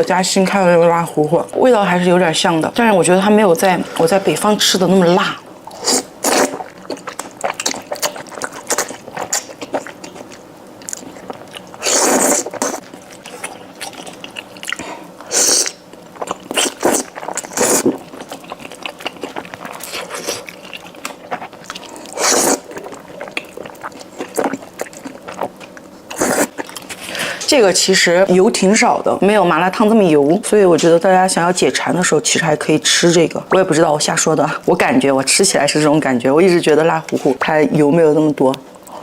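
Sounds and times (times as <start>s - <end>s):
person chewing wet food: 5.6s - 27.2s.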